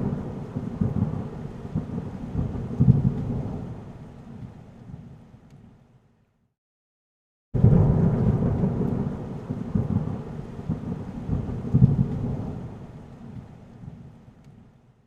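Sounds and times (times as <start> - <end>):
thunder rumbling: 0.0 - 3.8, 7.6 - 14.0
steady rain: 0.0 - 6.0, 7.6 - 15.0.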